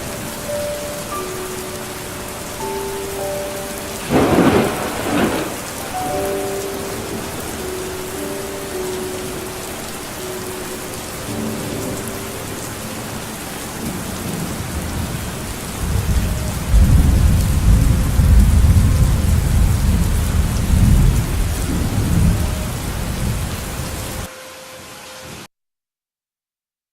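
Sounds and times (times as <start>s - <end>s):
steady rain: 0.0s - 25.5s
low rumble of thunder: 4.0s - 7.5s, 13.8s - 24.3s.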